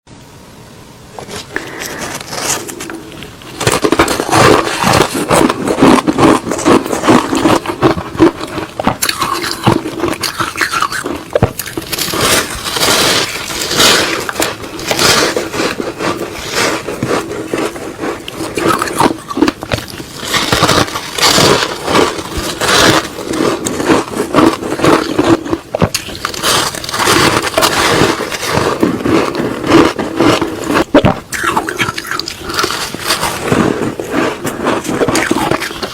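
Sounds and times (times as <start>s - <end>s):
ice being bitten and chewed: 1.3s - 35.9s.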